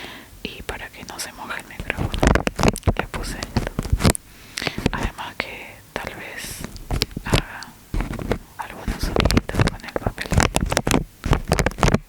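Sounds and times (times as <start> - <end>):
rapid irregular clicks and taps: 1.0 - 5.3, 6.0 - 12.0.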